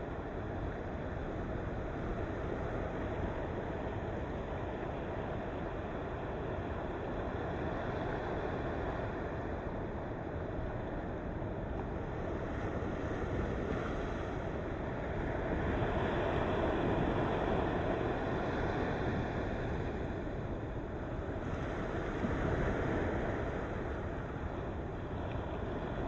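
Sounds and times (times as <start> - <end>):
ocean waves on shore: 0.0 - 26.0.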